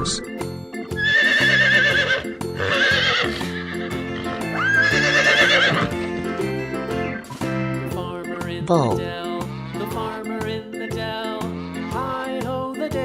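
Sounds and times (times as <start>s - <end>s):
children's background music: 0.0s - 13.0s
horse whinnying: 0.9s - 6.0s, 11.4s - 12.1s.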